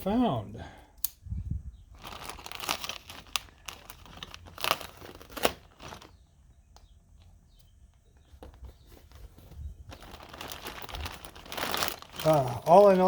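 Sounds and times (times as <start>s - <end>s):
packaging crinkling and tearing: 1.9s - 6.2s, 8.8s - 13.0s.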